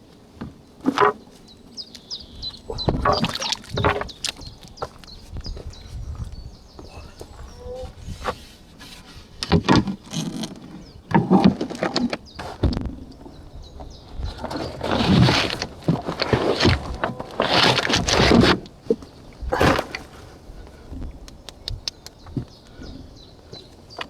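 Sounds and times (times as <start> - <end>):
canoe scraping: 0.8 - 1.5, 2.6 - 5.0, 6.9 - 20.9
knocks and thumps of canoe gear: 2.8 - 5.7, 8.1 - 13.0, 13.8 - 21.2.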